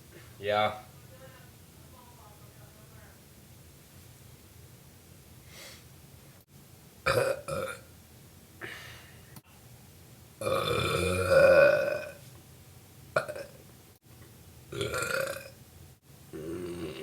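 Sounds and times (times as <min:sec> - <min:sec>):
man burping: 0:07.1 - 0:07.8, 0:10.4 - 0:12.2, 0:13.2 - 0:13.6, 0:14.7 - 0:15.5, 0:16.3 - 0:17.0.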